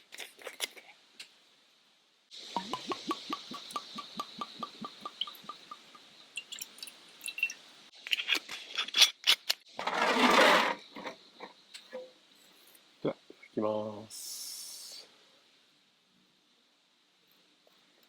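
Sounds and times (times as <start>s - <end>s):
liquid glugging from a bottle: 2.5s - 7.5s.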